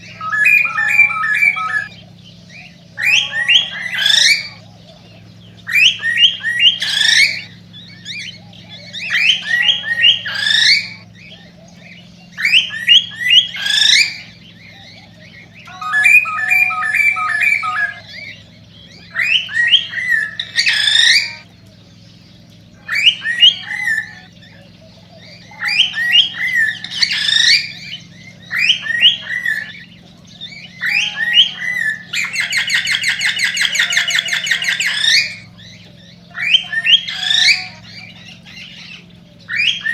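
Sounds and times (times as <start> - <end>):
steady low hum: 0.0 - 39.5
cockatiel whistling song: 0.1 - 2.0, 15.7 - 18.2, 19.1 - 21.5, 30.8 - 35.5, 36.3 - 39.9.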